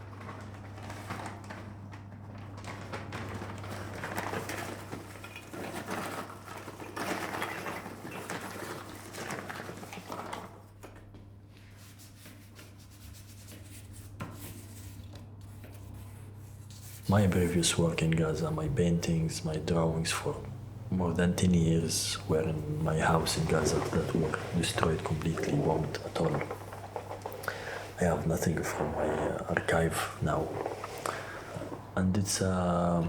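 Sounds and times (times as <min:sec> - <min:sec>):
objects clattering and rustling: 0:00.0 - 0:12.5, 0:13.6 - 0:33.0
steady low hum: 0:16.6 - 0:33.0.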